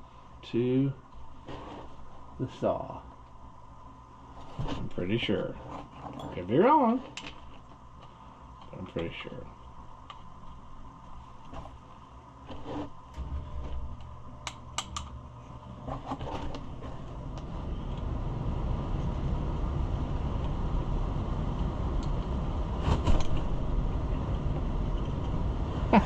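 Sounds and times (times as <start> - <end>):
low rumble: 13.1 - 15.7.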